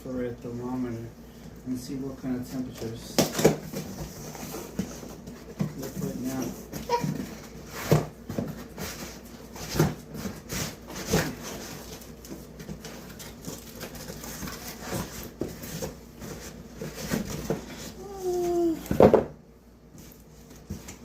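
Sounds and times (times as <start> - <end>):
objects knocking and rustling: 3.2 - 19.4.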